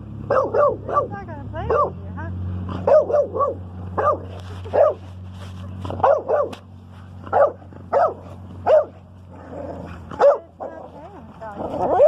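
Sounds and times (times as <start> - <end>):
dog barking: 0.3 - 2.0, 2.7 - 5.1, 5.9 - 6.6, 7.3 - 9.0, 10.1 - 10.9.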